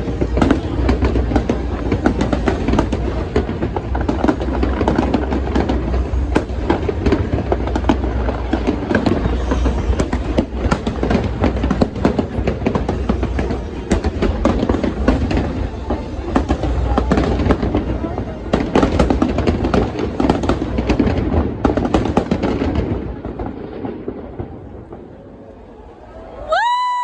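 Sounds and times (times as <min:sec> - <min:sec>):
low booming: 0:00.0 - 0:25.3
fireworks bangs and crackles: 0:00.0 - 0:25.9.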